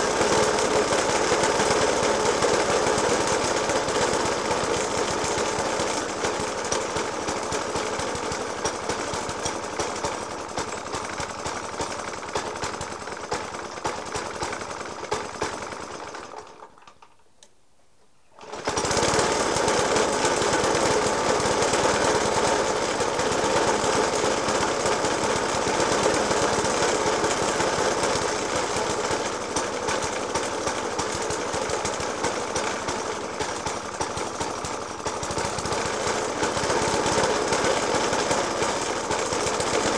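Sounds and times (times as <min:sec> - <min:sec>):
lawnmower engine idling roughly: 0:00.0 - 0:16.8, 0:18.4 - 0:39.9.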